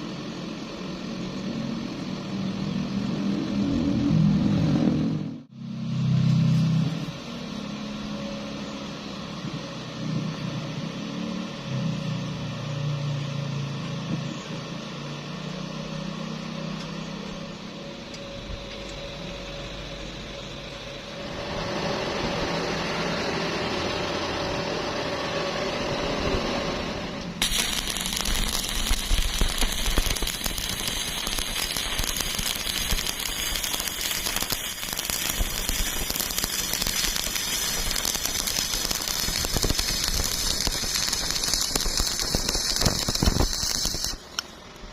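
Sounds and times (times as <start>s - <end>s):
low mechanical hum: 0.0s - 44.9s
welding arc crackling: 22.4s - 44.9s.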